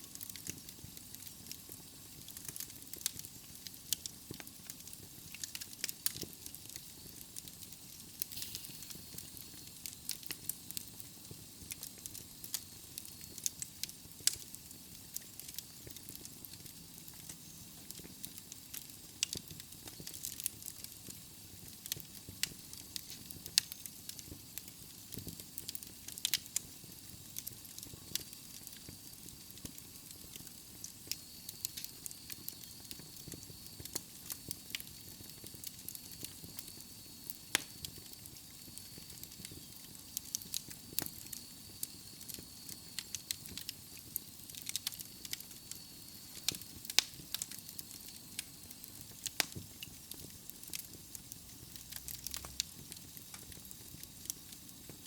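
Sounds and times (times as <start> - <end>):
wood logs crackling in fireplace: 0.0 - 55.0.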